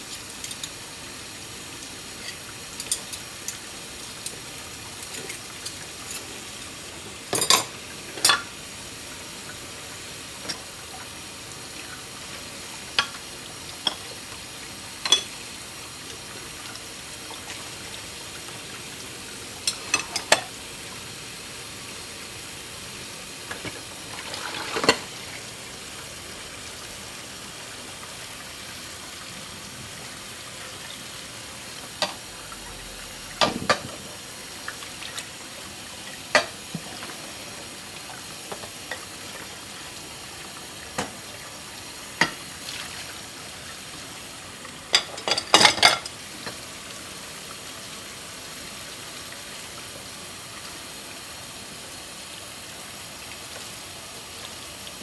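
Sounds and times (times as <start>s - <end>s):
running water hiss: 0.0s - 55.0s
plates and cutlery clinking: 7.2s - 8.5s, 15.0s - 15.4s, 19.7s - 20.6s, 23.5s - 25.3s, 33.4s - 34.1s, 44.9s - 46.6s.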